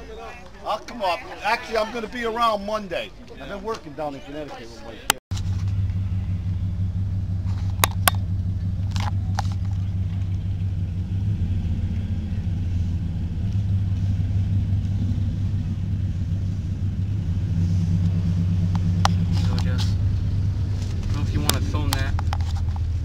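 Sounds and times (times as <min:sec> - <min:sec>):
car engine low drone: 0:05.3 - 0:23.0.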